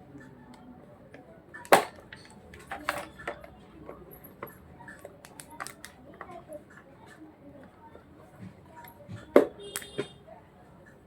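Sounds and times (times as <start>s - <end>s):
small tools clicking and knocking: 1.6s - 6.4s.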